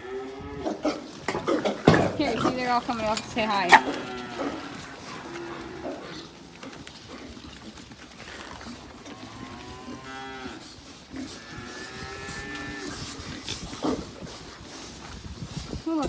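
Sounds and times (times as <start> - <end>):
cattle mooing: 0.0 - 7.2, 8.2 - 13.3.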